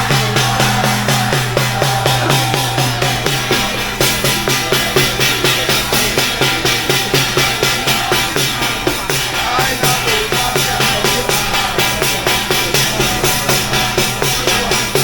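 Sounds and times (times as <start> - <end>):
low bass tone: 0.0 - 5.4
fast drumbeat: 0.0 - 15.0.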